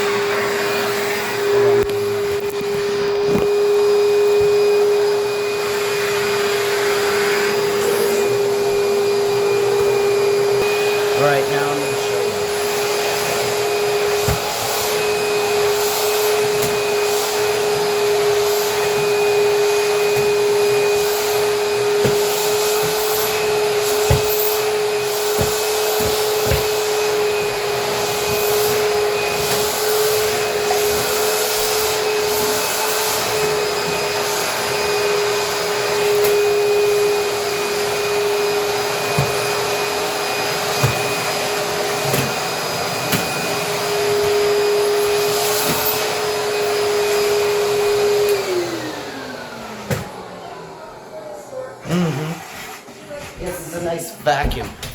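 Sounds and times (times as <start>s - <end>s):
vacuum cleaner running: 0.0s - 54.9s.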